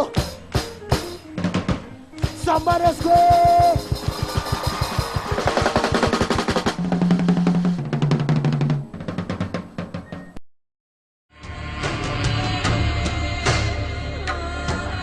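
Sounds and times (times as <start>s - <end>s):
gospel band music: 0.0s - 9.9s
snare drum roll: 0.5s - 10.3s.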